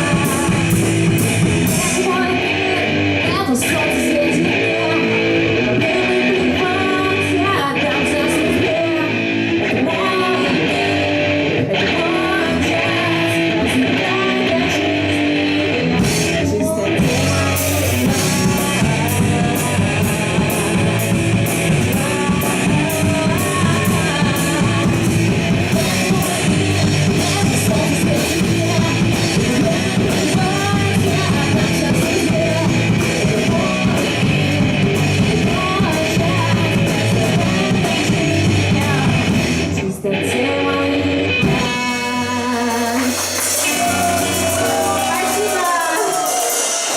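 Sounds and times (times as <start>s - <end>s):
drums with cymbal strokes: 0.0s - 2.2s, 41.4s - 46.9s
electric guitar: 0.0s - 46.9s
rock band playing live: 0.0s - 46.9s.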